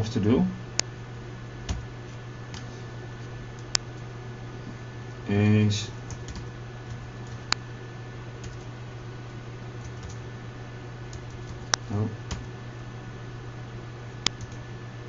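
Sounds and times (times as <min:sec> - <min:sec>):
low electrical hum: 0:00.0 - 0:15.0.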